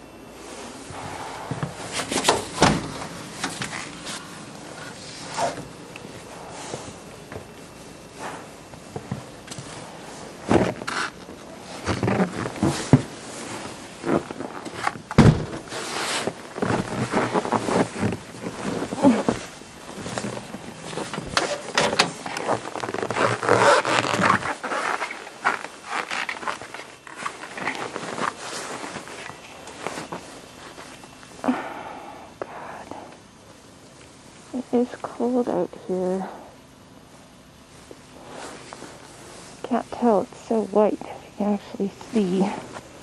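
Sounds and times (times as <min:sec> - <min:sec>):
winter clothing rustling: 0:00.0 - 0:31.8, 0:37.6 - 0:40.9.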